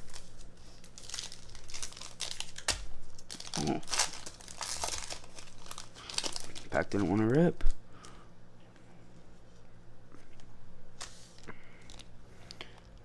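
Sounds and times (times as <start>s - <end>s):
foil wrapper crinkling and tearing: 0.0s - 7.6s, 11.0s - 12.7s.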